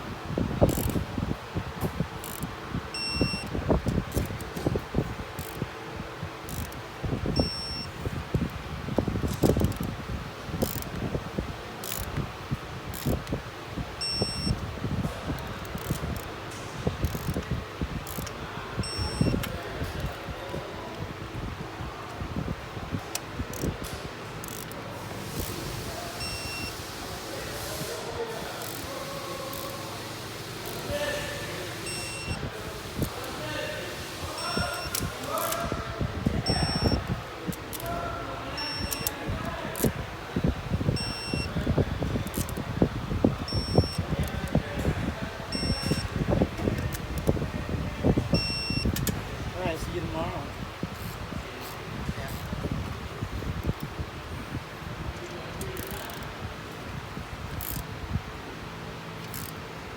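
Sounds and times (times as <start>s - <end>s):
hand ratchet clicking: 0.6s - 1.0s, 2.2s - 4.8s, 5.4s - 5.7s, 6.4s - 6.8s, 9.2s - 10.0s, 10.6s - 11.0s, 11.8s - 12.2s, 12.9s - 13.4s, 15.4s - 16.3s, 17.0s - 20.2s, 23.1s - 26.8s, 28.5s - 29.9s, 30.6s - 30.9s, 34.3s - 35.7s, 36.4s - 38.0s, 38.6s - 39.9s, 42.2s - 42.6s, 51.0s - 52.5s, 55.6s - 56.3s, 57.5s - 57.9s, 59.2s - 59.6s
short electronic beeps: 3.0s - 3.5s, 7.4s - 7.9s, 14.0s - 14.6s, 18.8s - 19.4s, 26.2s - 26.8s, 31.8s - 32.4s, 34.4s - 35.0s, 36.5s - 37.0s, 38.6s - 39.1s, 41.0s - 41.5s, 43.5s - 44.0s, 45.5s - 46.1s, 48.4s - 48.9s
short electronic beep: 36.5s - 37.0s.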